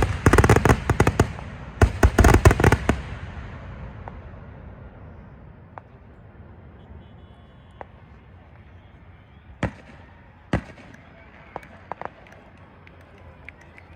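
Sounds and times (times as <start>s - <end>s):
sharp firework bangs: 0.0s - 4.7s, 9.6s - 12.2s
fireworks barrage rumbling echo: 0.0s - 13.4s
faint firework pops: 5.7s - 6.1s, 7.7s - 8.8s, 9.5s - 13.8s.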